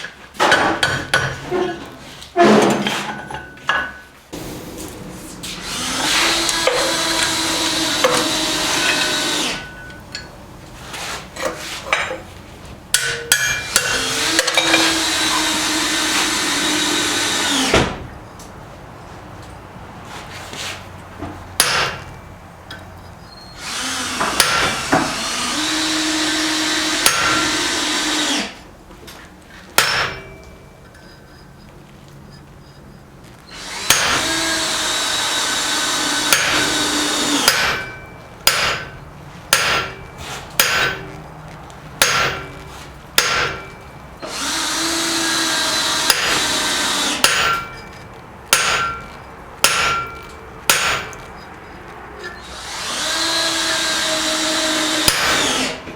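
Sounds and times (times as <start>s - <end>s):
hammer blows on metal: 4.3s - 10.5s, 33.9s - 34.8s, 36.3s - 41.2s, 42.0s - 44.4s, 45.0s - 51.2s
machine running steadily: 4.4s - 11.4s.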